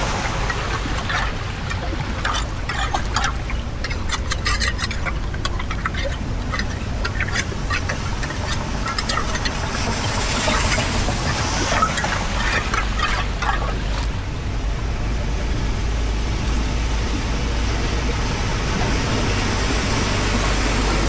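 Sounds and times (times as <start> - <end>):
water rushing into drain: 0.0 - 14.6
water splashes and gurgles: 0.0 - 14.8.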